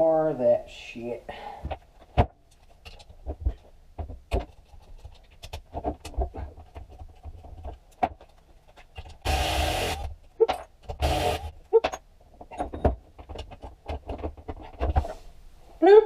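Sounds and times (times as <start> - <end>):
power tool bursts: 9.2 - 10.1, 11.0 - 11.5.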